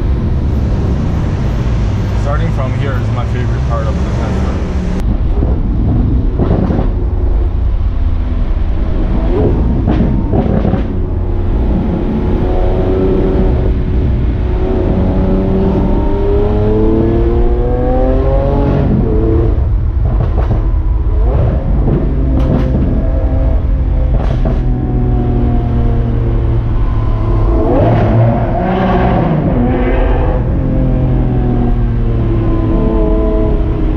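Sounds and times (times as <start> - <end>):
sports car engine revving: 9.0 - 33.9.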